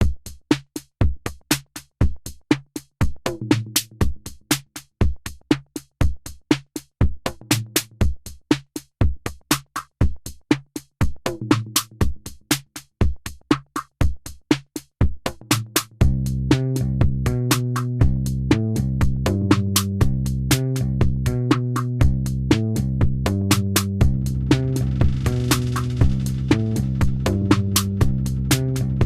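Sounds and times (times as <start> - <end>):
drum-machine beat: 0.0 - 29.0
repeating low bass: 16.1 - 29.0.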